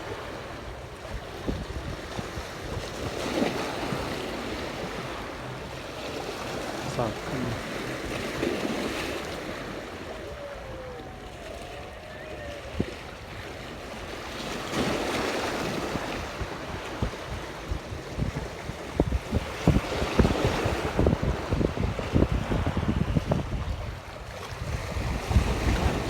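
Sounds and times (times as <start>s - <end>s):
water lapping at a boat: 0.0s - 26.0s
wind buffeting microphone: 0.0s - 26.0s.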